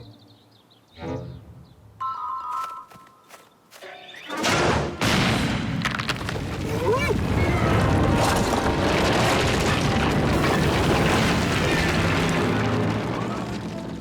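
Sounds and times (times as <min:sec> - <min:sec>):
music: 0:00.0 - 0:01.7.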